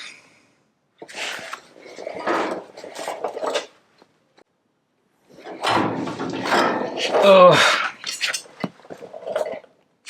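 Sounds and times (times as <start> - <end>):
sheet metal scraping and clattering: 1.0 - 3.8, 5.3 - 9.7.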